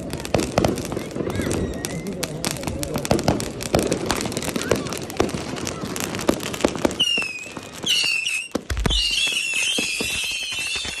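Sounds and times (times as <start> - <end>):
fireworks crackling pops: 0.0 - 11.0
high wavering firework whistles: 6.8 - 11.0.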